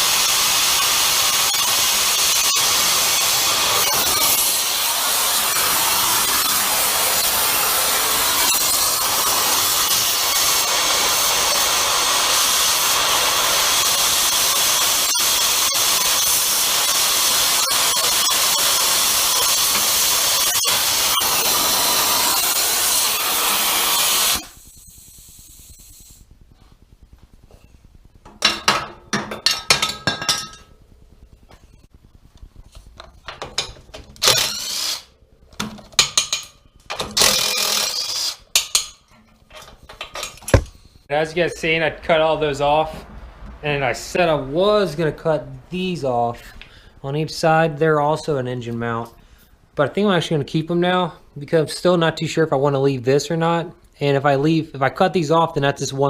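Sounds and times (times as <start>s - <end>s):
cutting torch hissing: 0.0s - 26.8s, 34.2s - 35.2s
metal parts clattering: 29.2s - 30.7s.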